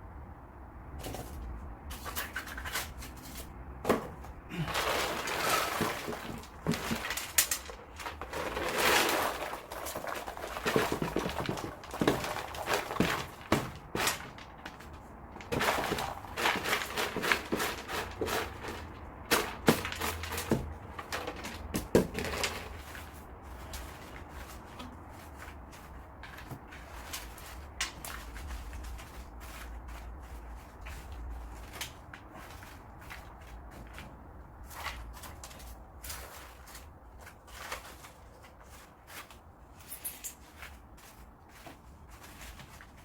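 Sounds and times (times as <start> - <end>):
wooden roots knocking together: 3.8 - 34.2.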